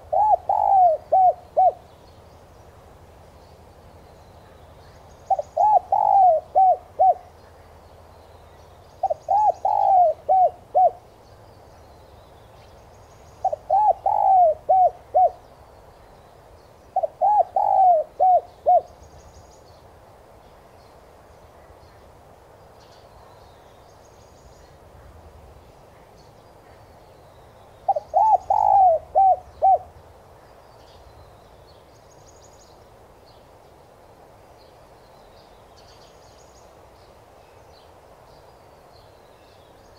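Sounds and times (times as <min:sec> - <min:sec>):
dove cooing: 0:00.0 - 0:01.8, 0:05.3 - 0:07.4, 0:09.0 - 0:11.0, 0:13.4 - 0:15.4, 0:17.0 - 0:18.9, 0:27.9 - 0:30.0
small birds chirping: 0:00.0 - 0:33.8.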